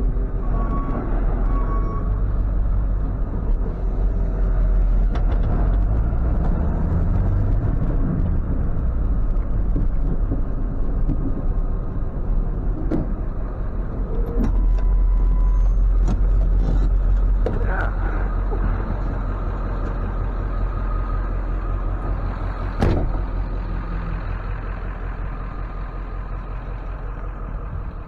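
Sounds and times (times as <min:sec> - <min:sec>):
truck engine running: 0:00.0 - 0:28.0.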